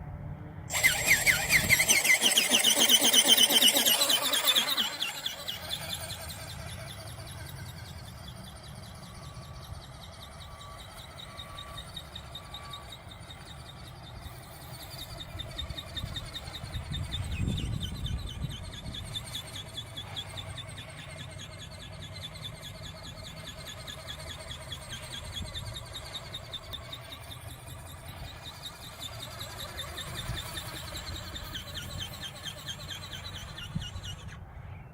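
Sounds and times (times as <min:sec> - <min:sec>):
model plane motor whine: 0:00.7 - 0:34.9
wind buffeting microphone: 0:15.4 - 0:19.3.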